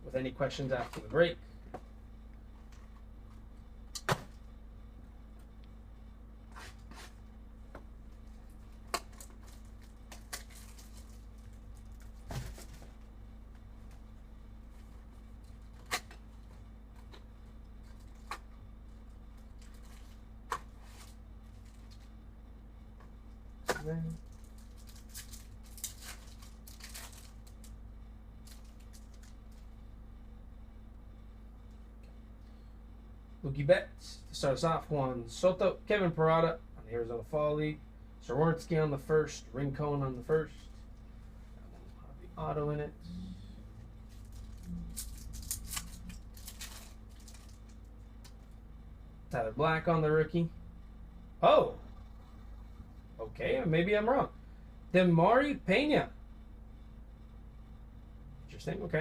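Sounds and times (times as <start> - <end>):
faint electrical hum: 0.0 - 59.0
foil wrapper crinkling and tearing: 9.0 - 12.2, 24.1 - 27.8, 44.1 - 48.4.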